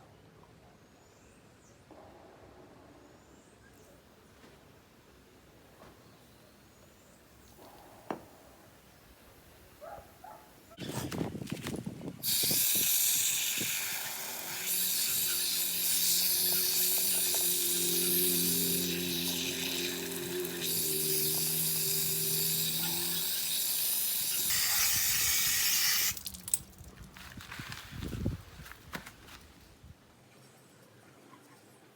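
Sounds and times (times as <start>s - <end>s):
loud steady hiss: 12.2s - 26.3s.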